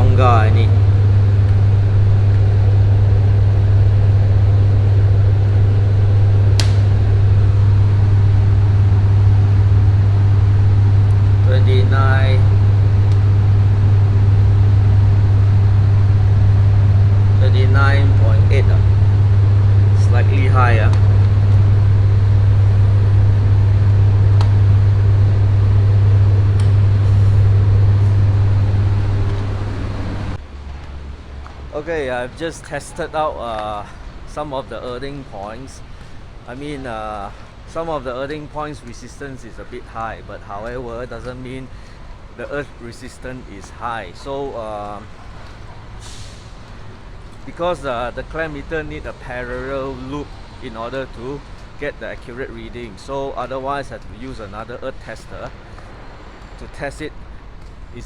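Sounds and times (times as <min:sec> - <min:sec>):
even rushing noise: 0:00.0 - 0:30.4
transformer electrical hum: 0:00.0 - 0:58.0
sharp click: 0:06.6 - 0:07.0.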